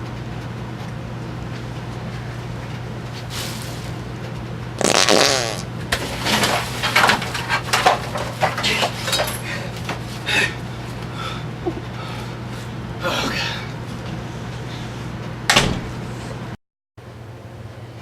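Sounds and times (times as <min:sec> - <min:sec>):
steady low hum: 0:00.0 - 0:18.0
farting: 0:04.8 - 0:05.7.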